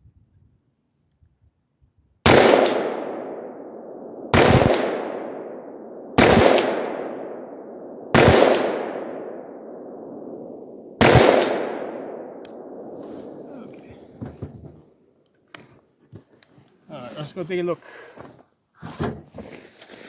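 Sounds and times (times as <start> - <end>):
rifle shots with echo: 2.2 - 14.0.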